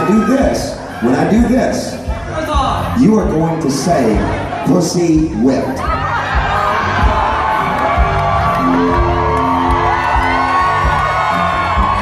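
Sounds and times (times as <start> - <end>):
crowd whooping and cheering: 0.0 - 1.9, 5.4 - 12.0
live band music: 0.0 - 12.0.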